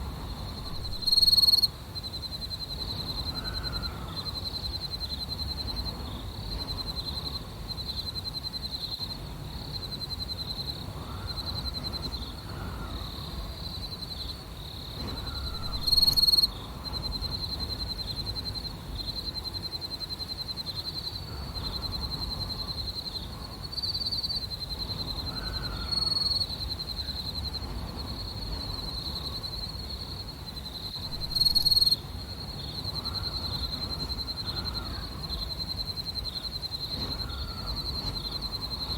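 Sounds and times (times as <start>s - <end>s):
low wind rumble: 0.0s - 2.1s, 10.8s - 19.4s, 24.6s - 38.9s
crickets chirping: 0.0s - 38.9s.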